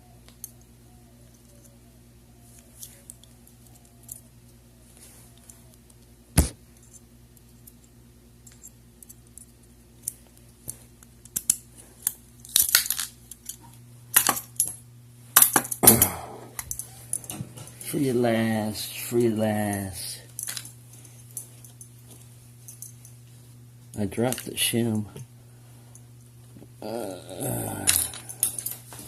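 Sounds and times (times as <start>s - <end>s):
handcuffs clicking and rattling: 2.6s - 4.3s, 6.9s - 14.8s, 15.4s - 17.8s, 19.6s - 23.2s, 27.7s - 29.0s.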